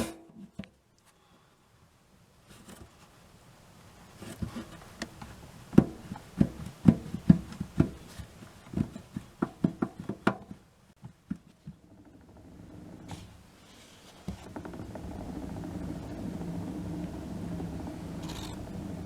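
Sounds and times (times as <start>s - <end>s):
hard plastic parts knocking: 4.2s - 13.4s.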